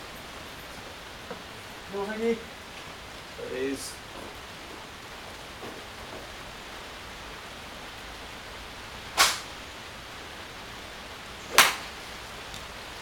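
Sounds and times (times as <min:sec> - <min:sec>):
steady hiss: 0:00.0 - 0:13.0
golf clubs hitting balls: 0:09.1 - 0:09.6, 0:11.4 - 0:12.6.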